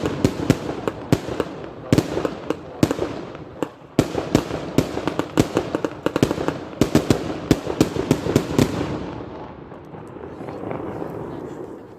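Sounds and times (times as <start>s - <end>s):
firework bangs: 0.0s - 11.9s.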